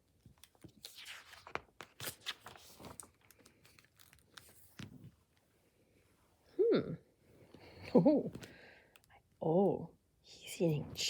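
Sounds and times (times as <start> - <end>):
paper pages rustling: 0.3 - 5.1.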